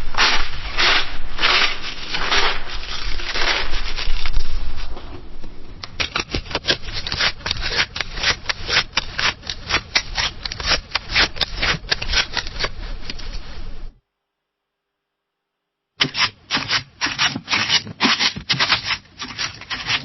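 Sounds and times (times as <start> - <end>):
scissors cutting paper: 5.9 - 12.8.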